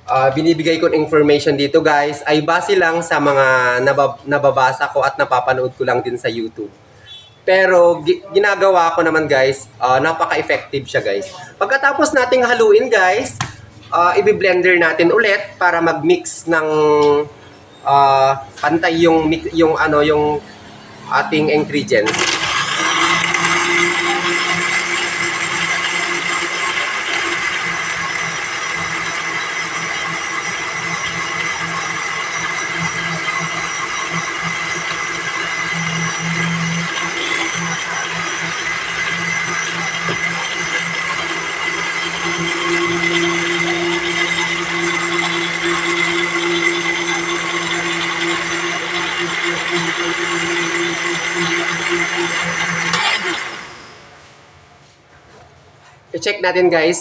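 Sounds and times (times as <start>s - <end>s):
blender motor whining: 19.4s - 54.1s.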